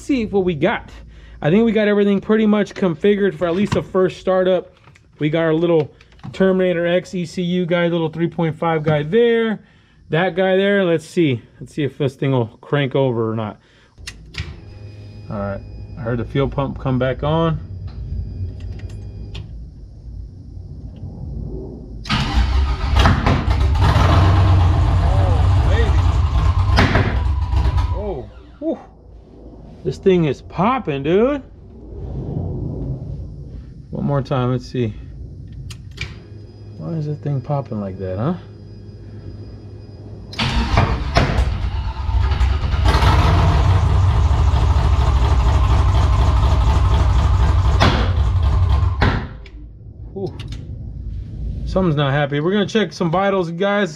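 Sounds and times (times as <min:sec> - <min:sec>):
engine popping: 0:22.1 - 0:28.0, 0:40.4 - 0:49.4
engine cranking: 0:22.1 - 0:28.4, 0:40.4 - 0:49.0
engine running loud and rough: 0:22.9 - 0:28.0, 0:40.4 - 0:49.1.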